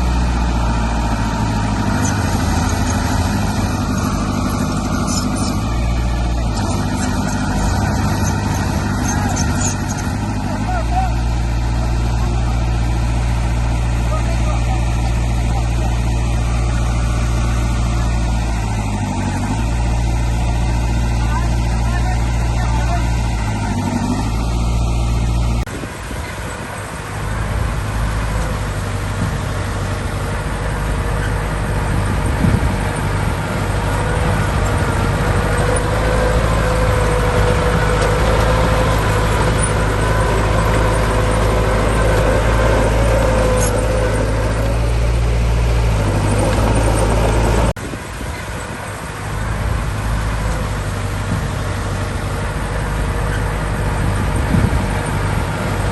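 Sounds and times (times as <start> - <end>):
diesel engines droning: 0.0 - 55.9.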